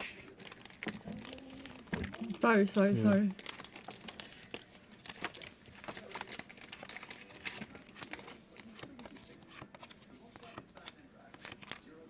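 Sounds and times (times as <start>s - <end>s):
trading cards clicking and rustling: 0.3s - 12.0s.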